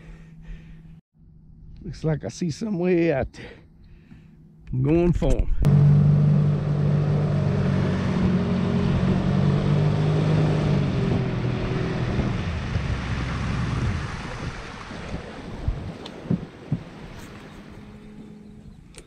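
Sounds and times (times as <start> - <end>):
wind: 0.0 - 19.0
outboard motor running: 5.7 - 19.0
water noise: 6.2 - 19.0.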